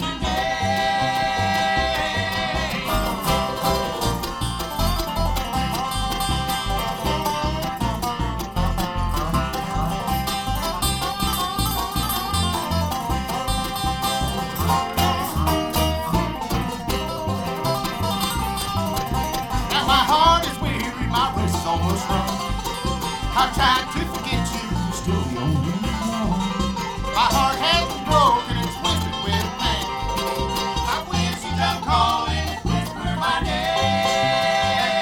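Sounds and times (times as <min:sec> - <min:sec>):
banjo picking: 0:00.0 - 0:35.0
bass beat: 0:00.0 - 0:35.0
guitar picking: 0:00.0 - 0:35.0.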